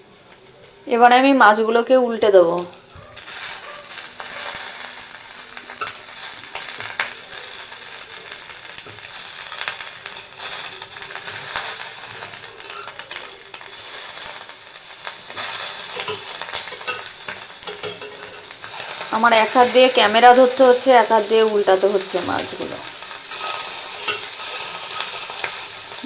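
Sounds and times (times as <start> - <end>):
fish sizzling in a pan: 0.0 - 26.0
spatula clicking and scraping: 15.3 - 19.8, 22.9 - 26.0.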